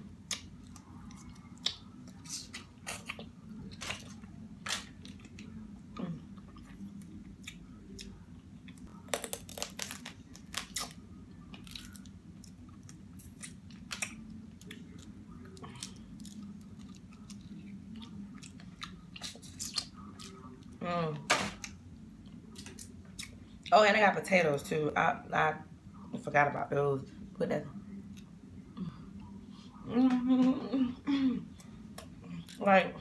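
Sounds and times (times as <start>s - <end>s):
steady low hum: 0.0s - 33.0s
chewing and wet mouth clicks: 1.1s - 1.9s.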